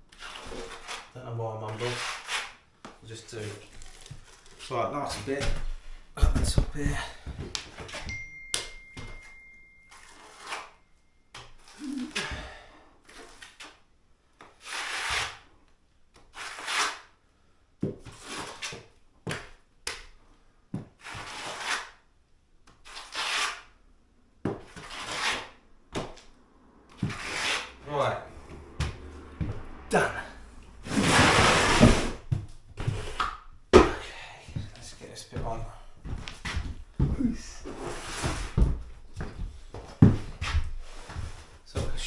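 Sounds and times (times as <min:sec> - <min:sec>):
trowel scraping adhesive on wall: 0:00.1 - 0:01.1, 0:01.7 - 0:02.6, 0:09.9 - 0:10.8, 0:13.0 - 0:13.8, 0:14.4 - 0:15.5, 0:16.1 - 0:17.2, 0:18.0 - 0:18.9, 0:20.9 - 0:22.1, 0:22.7 - 0:23.8, 0:24.5 - 0:26.2, 0:26.9 - 0:27.8, 0:30.8 - 0:33.4, 0:37.7 - 0:38.6.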